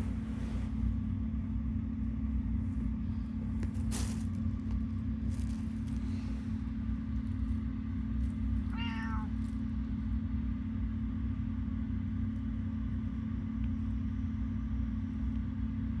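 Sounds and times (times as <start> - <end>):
steady low hum: 0.0 - 16.0
cat meowing: 8.6 - 9.4.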